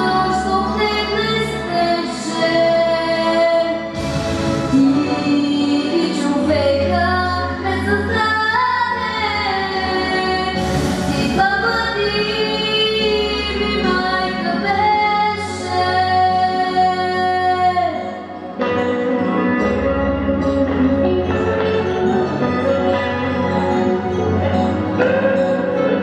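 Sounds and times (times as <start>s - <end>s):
woman singing: 0.0s - 4.0s, 4.6s - 18.9s
instrumental accompaniment: 0.0s - 26.0s.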